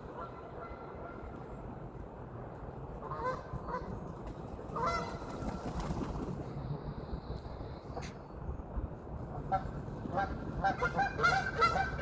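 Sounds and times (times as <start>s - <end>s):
steady low rumble: 0.0s - 12.0s
geese honking: 9.5s - 12.0s.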